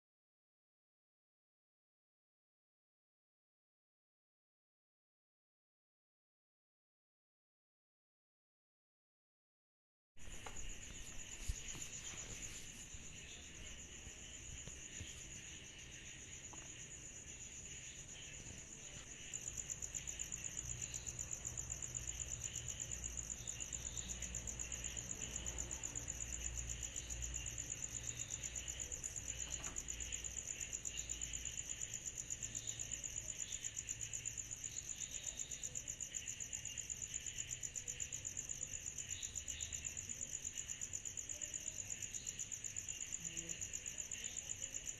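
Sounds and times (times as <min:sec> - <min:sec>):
steady insect buzz: 0:10.2 - 0:44.9.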